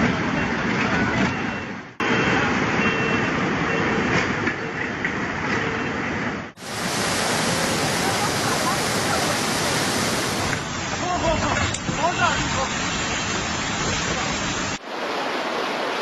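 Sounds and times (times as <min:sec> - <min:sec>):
faint short beeps: 0:01.2 - 0:04.9
floodwater rushing roar: 0:02.0 - 0:04.5, 0:06.5 - 0:16.0.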